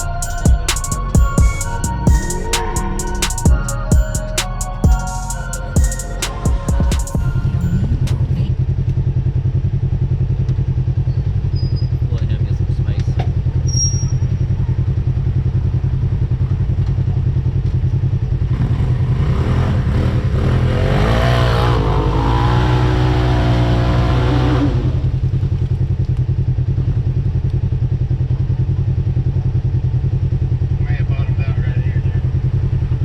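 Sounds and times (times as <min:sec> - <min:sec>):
off-road vehicle engine running: 0:00.0 - 0:33.0
engine revving: 0:18.5 - 0:25.2.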